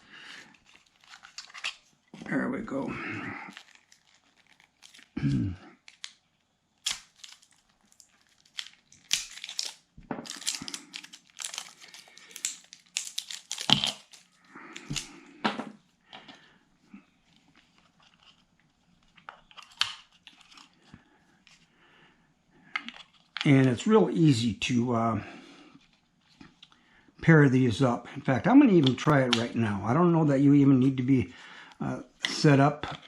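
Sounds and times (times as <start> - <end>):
plastic packaging crinkling: 0.0 - 15.1, 17.2 - 20.9.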